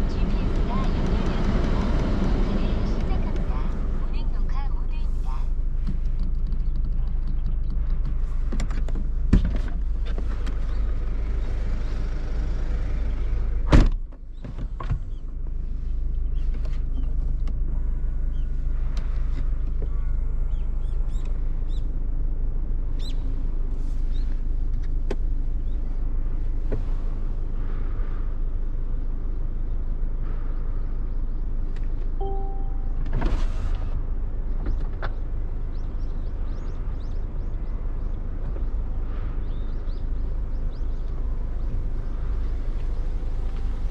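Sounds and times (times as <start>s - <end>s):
diesel engine and road noise: 0.0s - 43.9s
short beep: 32.2s - 33.2s.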